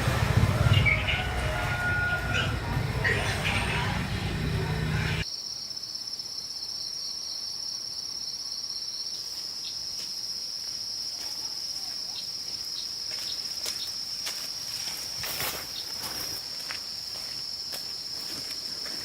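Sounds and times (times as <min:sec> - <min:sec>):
insects trilling: 0:05.2 - 0:19.0.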